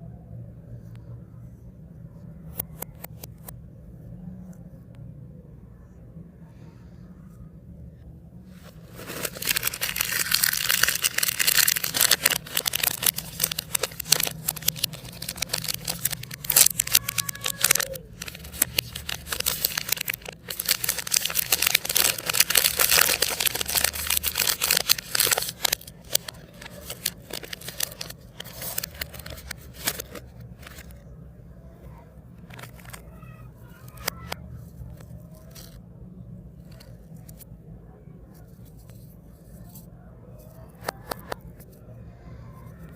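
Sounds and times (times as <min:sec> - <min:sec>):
plastic wrappers crinkling: 0:08.6 - 0:31.0, 0:32.4 - 0:33.2.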